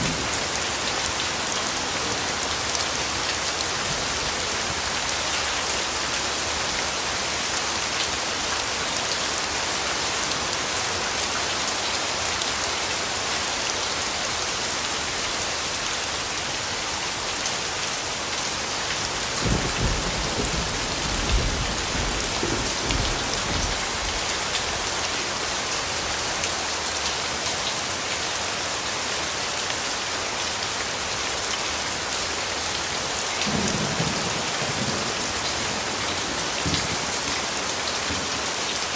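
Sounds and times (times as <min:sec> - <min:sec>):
steady rain falling: 0:00.0 - 0:38.9
low rumble of thunder: 0:19.4 - 0:24.2.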